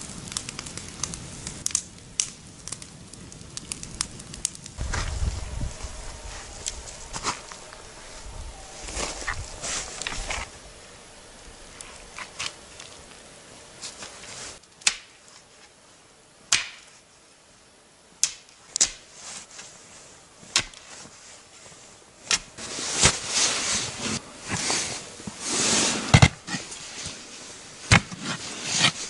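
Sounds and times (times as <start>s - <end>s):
scratchy rustling noise: 4.8s - 10.6s, 13.8s - 14.6s, 22.6s - 29.0s.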